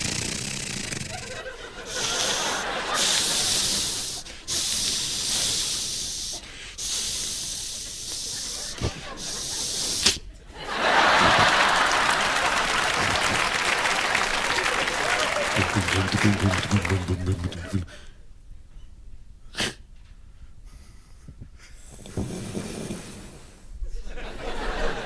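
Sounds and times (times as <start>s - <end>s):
person hissing into microphone: 0.0s - 10.3s
audience applause and cheering: 10.6s - 17.9s.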